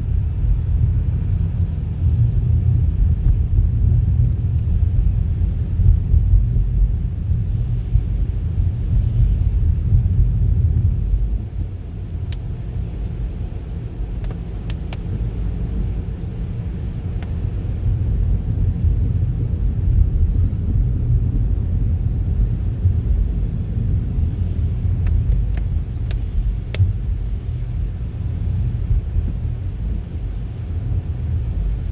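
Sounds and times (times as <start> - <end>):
car engine and road rumble: 0.0 - 31.9
faint clicks: 14.1 - 15.5, 25.0 - 27.0.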